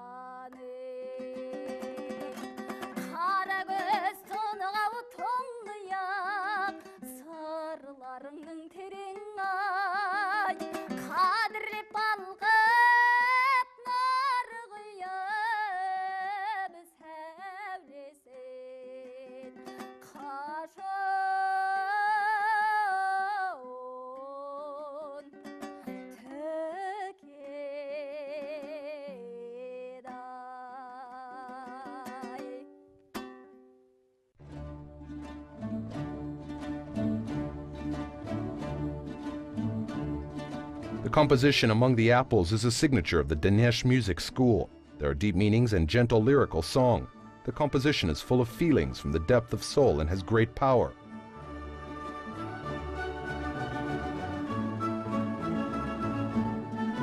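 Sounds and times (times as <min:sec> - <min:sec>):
plucked string accompaniment: 0:00.0 - 0:14.2, 0:19.1 - 0:23.8, 0:25.0 - 0:29.3, 0:31.3 - 0:33.8, 0:34.4 - 0:57.0
person singing with vibrato: 0:00.0 - 0:16.5.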